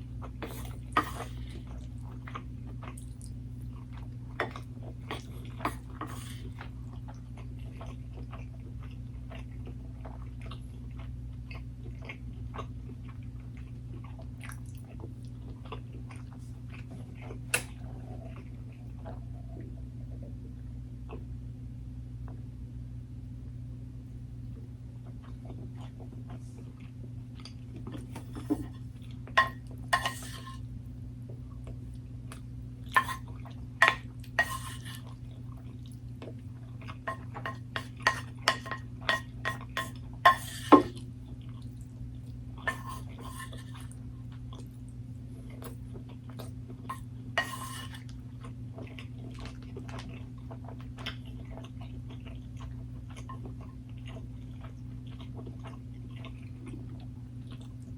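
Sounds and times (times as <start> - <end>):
steady low hum: 0.0 - 57.9
chewing: 0.2 - 20.4, 31.3 - 57.9
utensil clinking against dishware: 29.4 - 30.6, 37.1 - 41.0, 42.7 - 43.8.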